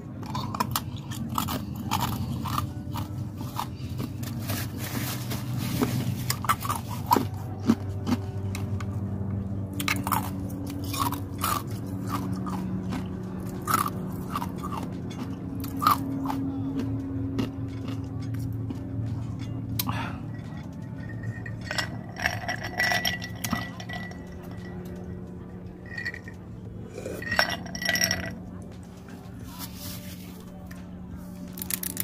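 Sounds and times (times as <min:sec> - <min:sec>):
low background hum: 0:00.0 - 0:32.0
person chewing crunchy food: 0:00.2 - 0:09.0, 0:09.8 - 0:22.6, 0:26.9 - 0:28.1.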